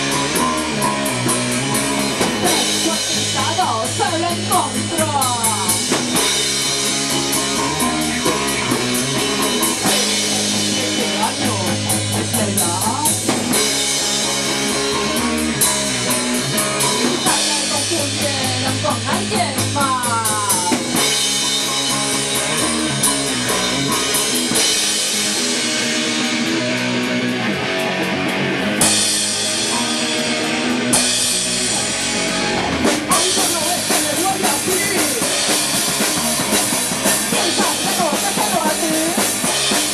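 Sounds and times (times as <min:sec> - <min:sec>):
bass guitar: 0:00.0 - 0:39.9
drum kit: 0:00.0 - 0:39.9
electric guitar: 0:00.0 - 0:39.9.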